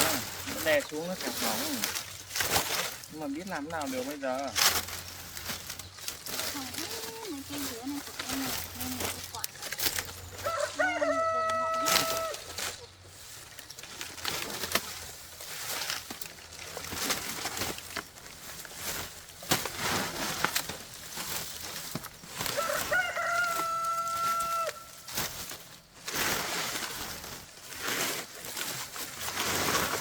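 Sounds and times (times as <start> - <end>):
rustling: 0.0 - 30.0
rooster crowing: 10.3 - 12.6, 22.5 - 25.0.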